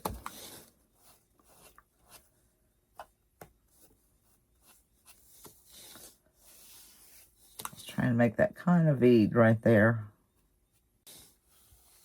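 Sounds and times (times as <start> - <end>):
faint rubbing: 3.7 - 7.7, 10.7 - 12.0.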